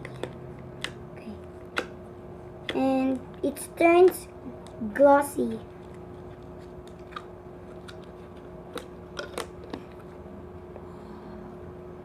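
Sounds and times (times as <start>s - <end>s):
faint hum: 0.0s - 12.0s.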